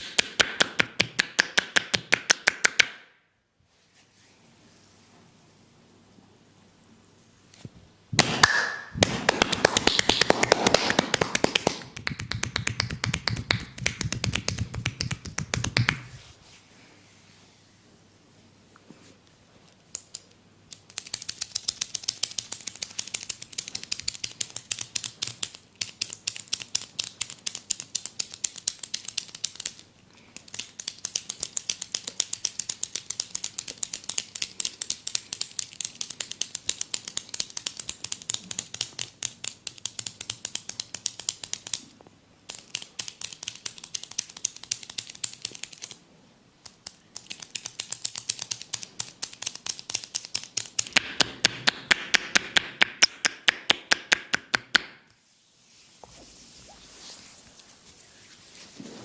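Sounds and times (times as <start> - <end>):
crackling clicks of massaging hands: 0.0 - 3.0, 7.5 - 16.3, 19.2 - 46.0, 46.6 - 55.2.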